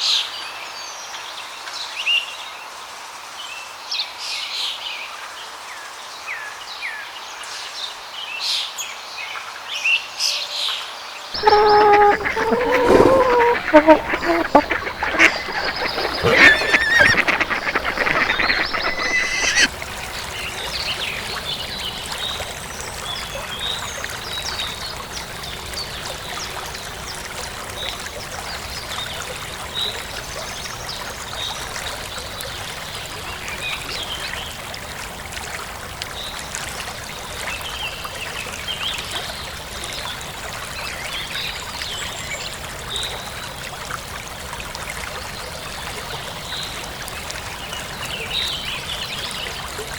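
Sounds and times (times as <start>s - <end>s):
small birds chirping: 11.4s - 19.7s
waterfowl honking: 11.4s - 19.7s
running water: 11.4s - 29.0s.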